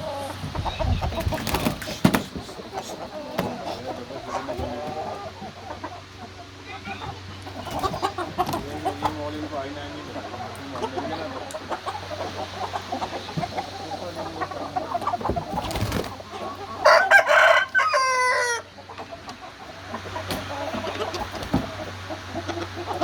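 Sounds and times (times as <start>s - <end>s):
chickens clucking: 0.0s - 23.0s
rooster crowing: 16.8s - 18.7s.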